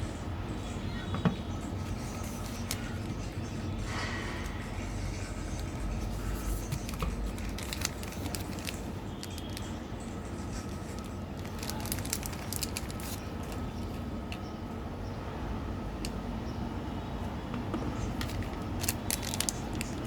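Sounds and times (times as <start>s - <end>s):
steady low hum: 0.0s - 20.0s
crackly chewing: 6.1s - 14.5s, 18.0s - 20.0s.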